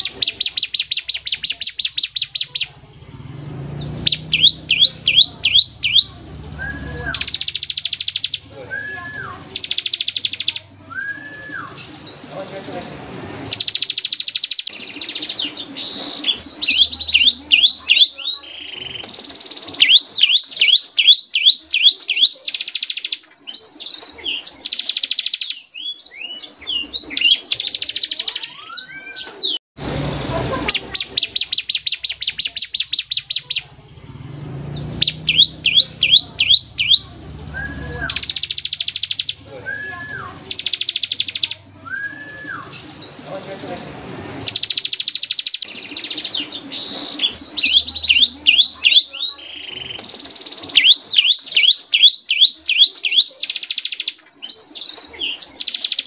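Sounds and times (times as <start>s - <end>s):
bird singing rapid trills: 0.0s - 12.8s, 13.4s - 43.8s, 44.4s - 56.0s
bird whistled notes: 3.8s - 12.0s, 13.5s - 29.6s, 34.3s - 43.1s, 44.4s - 56.0s.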